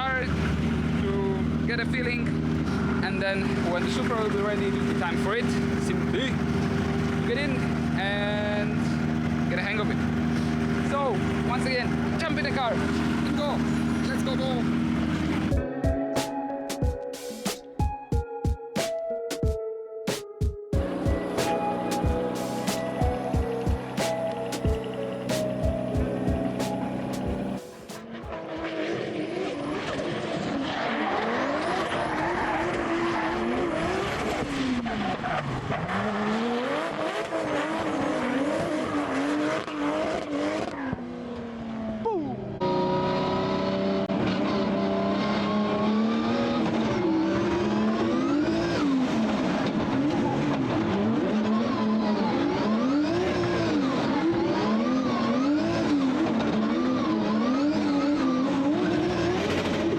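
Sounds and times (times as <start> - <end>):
car engines revving: 0.0 - 15.6, 20.8 - 59.9
tires skidding: 20.8 - 42.0.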